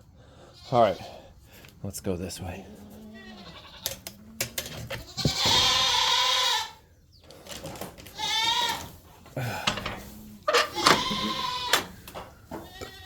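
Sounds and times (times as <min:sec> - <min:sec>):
goat bleating: 0:02.7 - 0:06.8, 0:08.1 - 0:12.0, 0:12.6 - 0:13.0.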